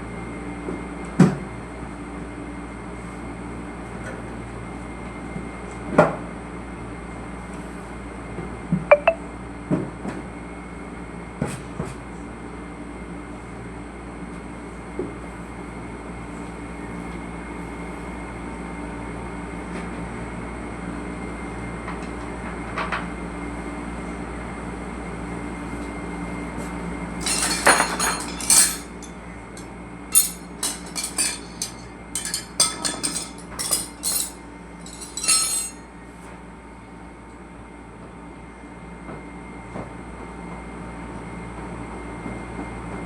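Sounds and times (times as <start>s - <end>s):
mechanical hum: 20.3s - 43.0s
sharp clinks and knocks: 27.2s - 29.1s, 30.1s - 35.8s.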